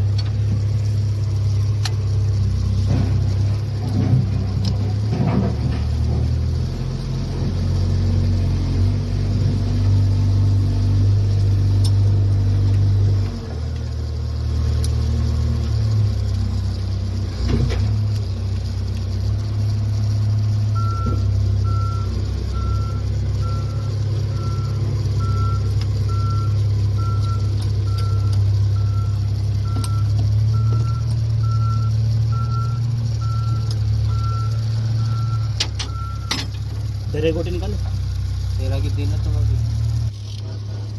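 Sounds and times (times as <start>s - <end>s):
excavator diesel engine running: 0.0s - 40.9s
high alarm beeping: 20.8s - 36.5s.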